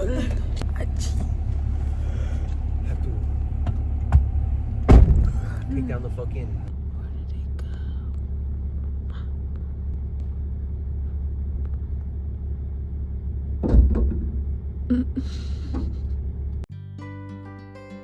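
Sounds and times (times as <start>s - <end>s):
car interior rumble: 0.0s - 16.7s
loud thump: 3.6s - 5.7s, 13.6s - 14.6s.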